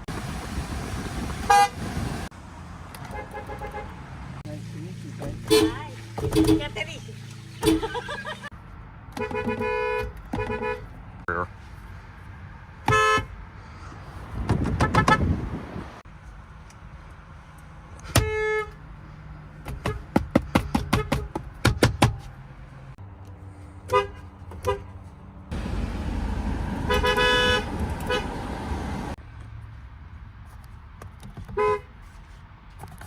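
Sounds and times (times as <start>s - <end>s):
road noise: 0.0s - 33.0s
car horns honking: 1.4s - 1.9s, 3.0s - 4.1s, 5.4s - 6.9s, 7.5s - 8.4s, 9.1s - 10.9s, 12.8s - 13.4s, 14.7s - 15.4s, 18.1s - 18.8s, 23.9s - 25.0s, 26.7s - 28.6s, 31.5s - 31.9s.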